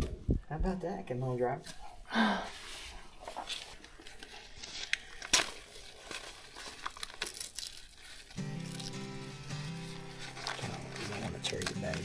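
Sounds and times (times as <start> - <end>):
container crinkling and rustling: 3.2 - 12.0.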